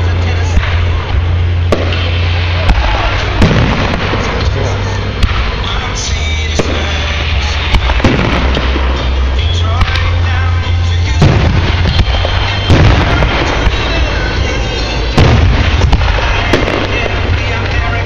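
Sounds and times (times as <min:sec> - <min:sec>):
fireworks bangs and pops: 0:00.0 - 0:18.0
steady low rumble: 0:00.0 - 0:18.0.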